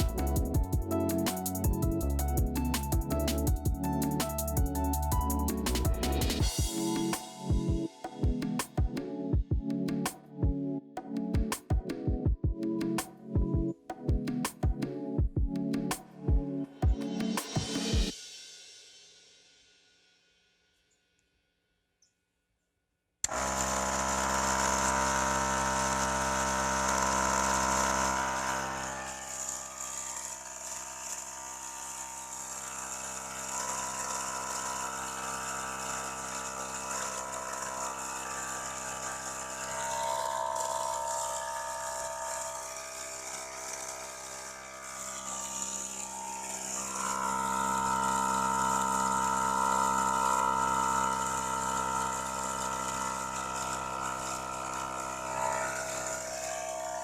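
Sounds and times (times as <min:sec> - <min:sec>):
air compressor motor hum: 0:23.3 - 0:57.0.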